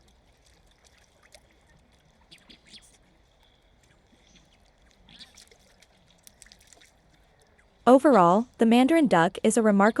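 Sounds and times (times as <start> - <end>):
water drips and splashes: 0.0 - 8.6
water trickling: 0.0 - 8.7.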